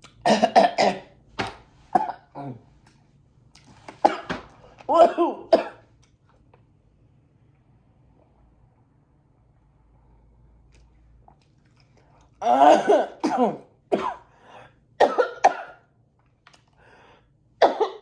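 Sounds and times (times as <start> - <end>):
woman coughing: 0.2 - 1.1, 2.0 - 2.6, 4.0 - 5.8, 12.4 - 14.3, 15.0 - 15.8, 17.6 - 18.0.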